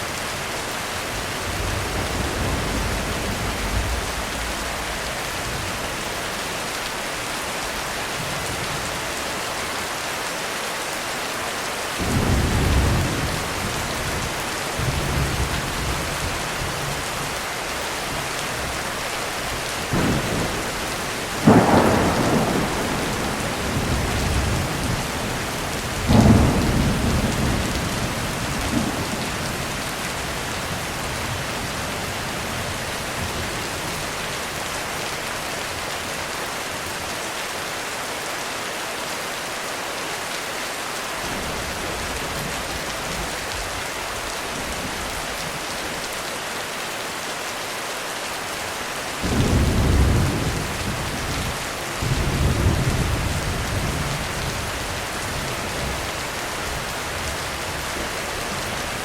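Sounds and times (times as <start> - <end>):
heavy rain on a roof: 0.0 - 59.0
thunder cracking and rumbling: 12.0 - 17.4, 19.9 - 33.6, 49.2 - 58.0.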